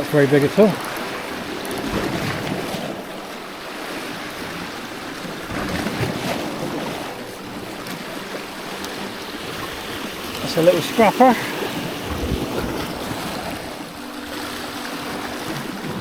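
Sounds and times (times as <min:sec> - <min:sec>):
sea waves washing against rocks: 0:00.0 - 0:16.0
wind buffeting microphone: 0:00.0 - 0:16.0.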